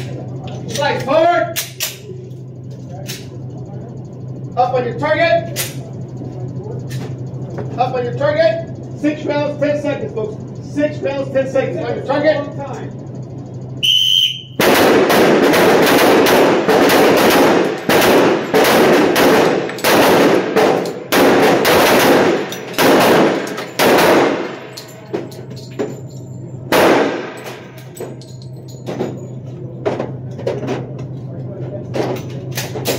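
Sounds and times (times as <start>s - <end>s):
short high beep: 13.8s - 14.6s
pistol shots: 14.6s - 24.9s, 26.7s - 27.6s.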